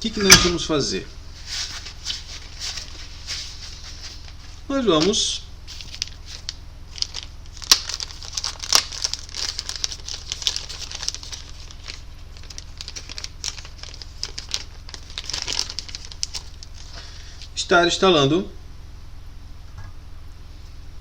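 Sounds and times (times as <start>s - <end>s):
plastic packaging crinkling: 1.4s - 17.0s.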